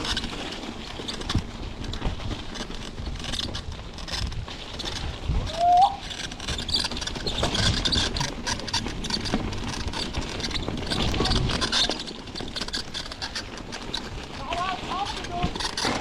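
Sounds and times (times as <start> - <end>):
bike rattling and clattering: 0.0 - 16.0
wind on microphone: 3.0 - 8.4.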